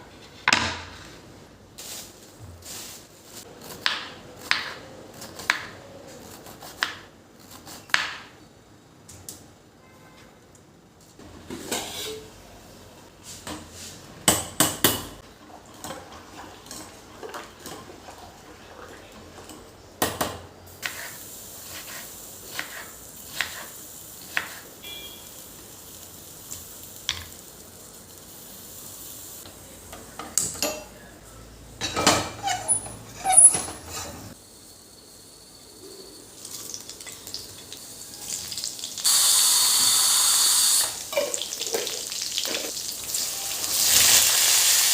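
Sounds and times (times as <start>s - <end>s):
metal utensils and pots clattering: 11.4s - 12.4s, 14.4s - 18.4s, 31.8s - 34.4s
faint sizzle: 20.7s - 31.6s, 34.0s - 39.6s, 40.7s - 44.9s.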